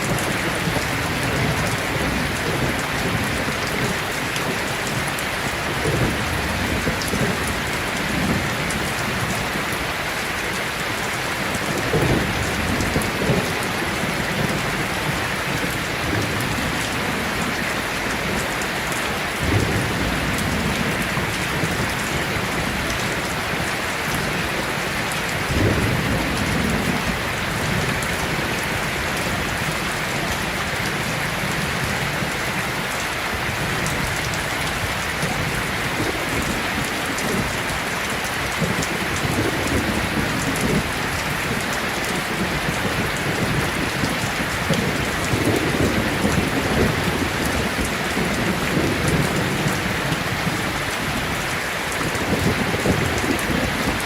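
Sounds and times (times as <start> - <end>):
heavy rain falling: 0.0 - 54.0
thunder rumbling: 11.5 - 54.0.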